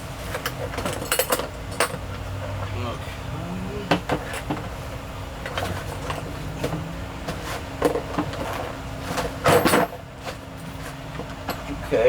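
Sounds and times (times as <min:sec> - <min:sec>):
tools rattling: 0:07.3 - 0:11.7.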